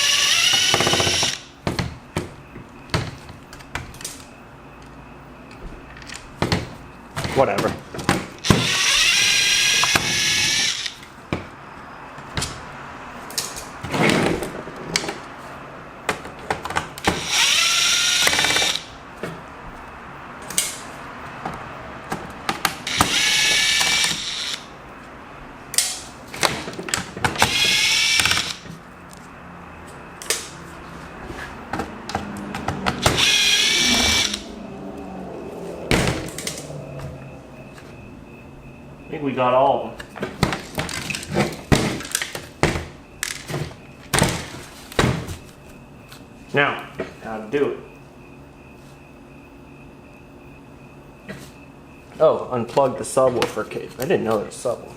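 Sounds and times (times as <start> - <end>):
electric screwdriver whirring: 0.0 - 1.5, 8.4 - 11.0, 17.0 - 18.9, 22.9 - 24.7, 27.4 - 28.6, 33.0 - 34.4.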